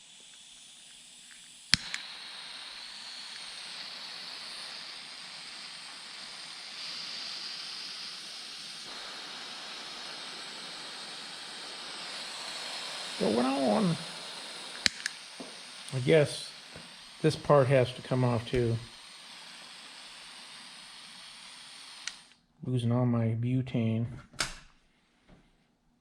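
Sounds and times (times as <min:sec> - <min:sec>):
gas hissing: 0:00.0 - 0:22.5
sharp click: 0:01.3 - 0:02.1, 0:14.8 - 0:15.5, 0:24.3 - 0:24.7.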